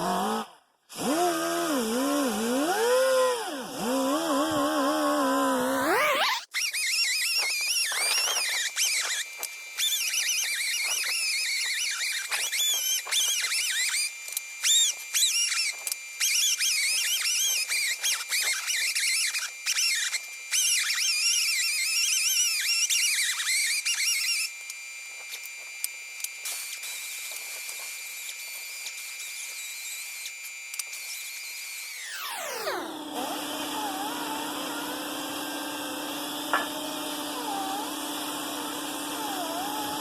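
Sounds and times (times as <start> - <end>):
rotary power tool whining on metal: 0.0 - 40.0
high-pitched squeal: 5.5 - 12.8.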